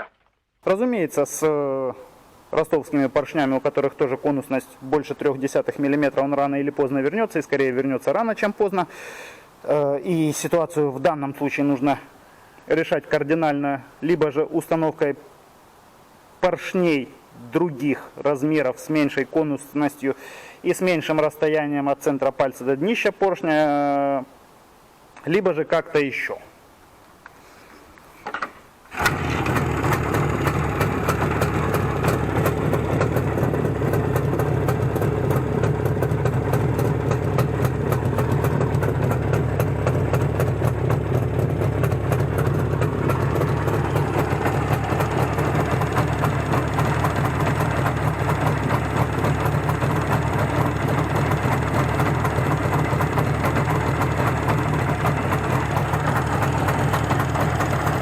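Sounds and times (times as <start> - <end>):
motorcycle engine starting and idling: 28.3 - 58.0.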